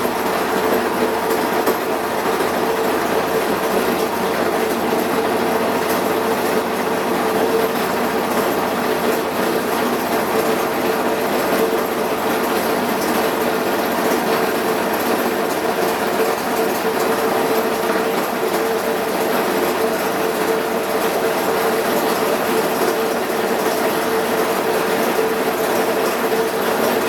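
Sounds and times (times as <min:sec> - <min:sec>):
washing machine rattling: 0:00.0 - 0:27.0.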